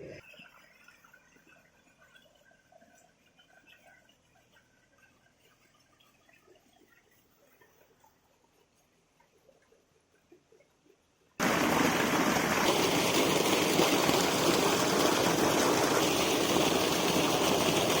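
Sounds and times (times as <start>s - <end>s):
rushing water: 11.4s - 18.0s.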